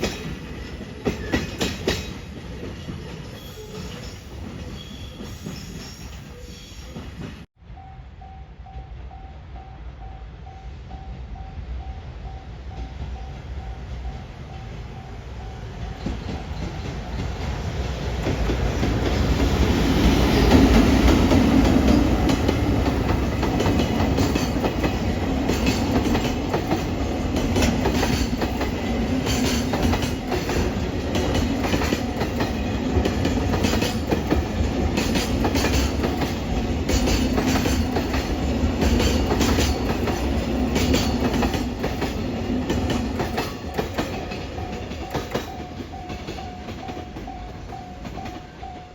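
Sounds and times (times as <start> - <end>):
freight train rumble: 0.0 - 48.9
wheels clacking over rail joints: 16.0 - 48.8.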